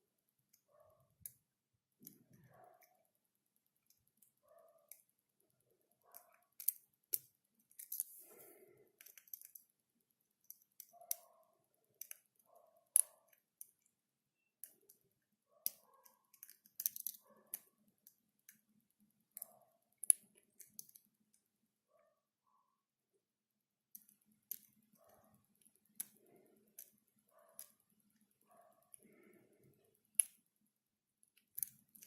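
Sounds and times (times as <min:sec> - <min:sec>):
faint scraping of lock pick: 0:06.1 - 0:09.7
lock pick metallic clicks: 0:15.6 - 0:17.6.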